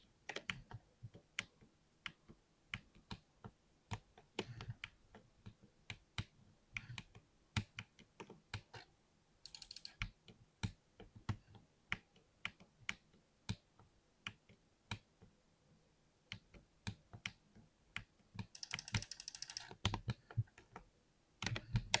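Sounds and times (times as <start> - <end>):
mechanical keyboard keystroke clacks: 9.5 - 10.1, 18.4 - 20.2.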